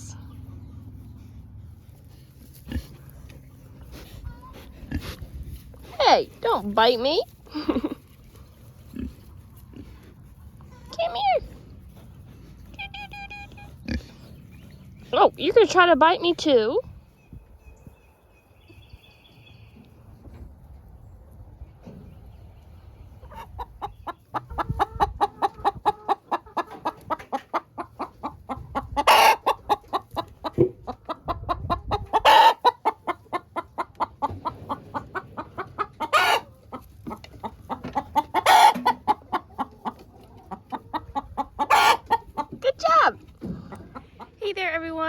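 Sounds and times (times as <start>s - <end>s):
chickens clucking: 0.0s - 18.9s, 19.7s - 45.0s
chicken squawk: 23.2s - 42.5s.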